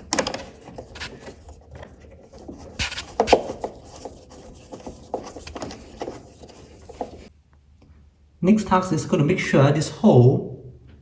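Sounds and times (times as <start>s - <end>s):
hinge parts clicking and knocking: 0.0s - 1.3s
rubbing and scraping: 0.0s - 7.3s.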